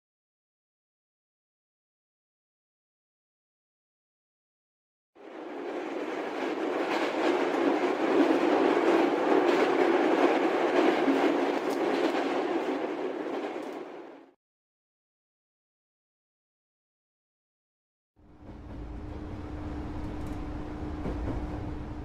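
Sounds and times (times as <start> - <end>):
train running on rails: 5.2 - 14.4, 18.2 - 22.0
train wheel clacks: 5.4 - 14.2, 18.3 - 22.0.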